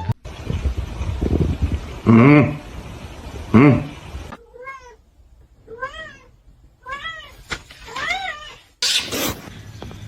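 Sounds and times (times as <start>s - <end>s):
cat meowing: 4.4s - 5.0s, 5.6s - 8.7s.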